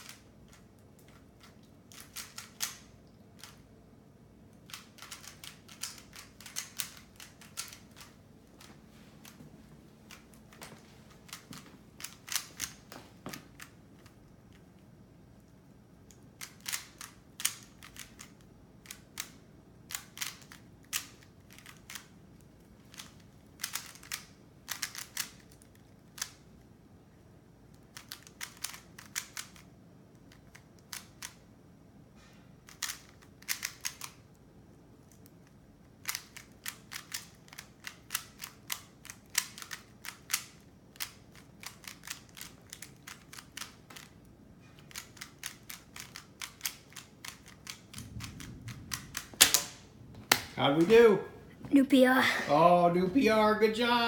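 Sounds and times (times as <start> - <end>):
puzzle cube plastic clicks: 0.0 - 3.7, 4.5 - 8.2, 11.2 - 14.8, 15.4 - 26.4, 27.7 - 31.5, 32.6 - 34.4, 35.0 - 49.7.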